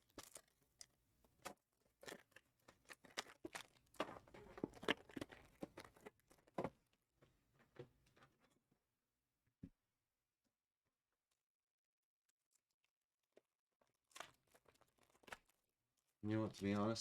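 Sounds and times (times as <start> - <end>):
packaging rustling and tearing: 1.4 - 6.6, 13.3 - 17.0.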